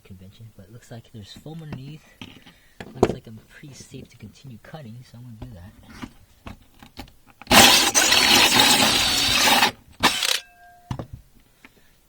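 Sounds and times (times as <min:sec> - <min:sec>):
power drill cutting with hole saw: 0:07.5 - 0:10.4.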